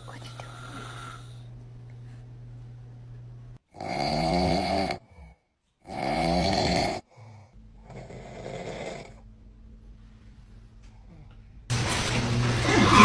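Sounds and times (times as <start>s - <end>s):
man snoring: 0.0s - 1.5s, 3.7s - 9.2s, 12.6s - 13.0s.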